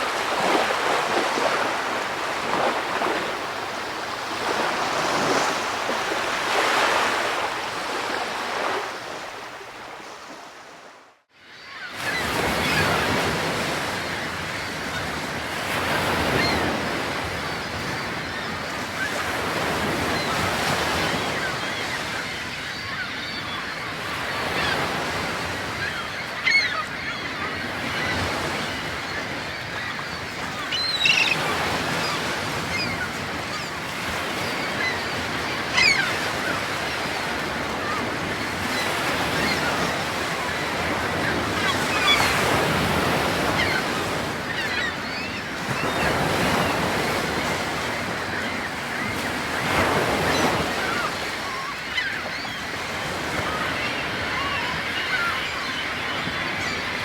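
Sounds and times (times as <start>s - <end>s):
ocean surf washing: 0.0s - 10.9s
bird calls: 15.9s - 57.0s.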